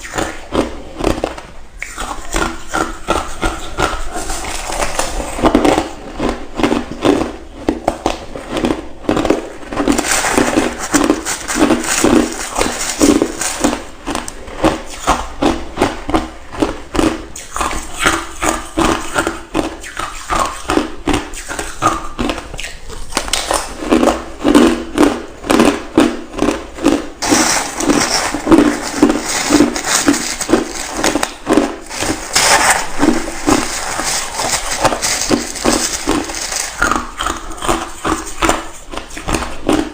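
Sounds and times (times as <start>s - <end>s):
crunching and chewing ice: 0.0s - 39.9s.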